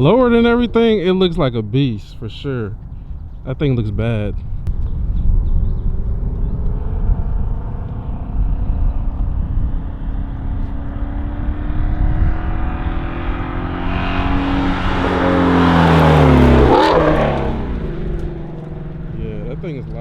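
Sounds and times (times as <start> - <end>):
car exhaust driving past: 4.4 - 20.0.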